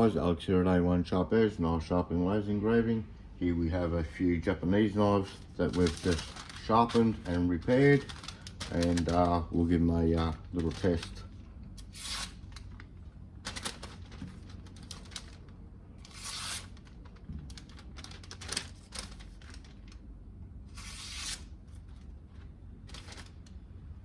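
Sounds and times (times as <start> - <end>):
knife slicing through paper: 5.3 - 9.3, 11.8 - 12.7, 16.0 - 19.7, 20.7 - 21.5.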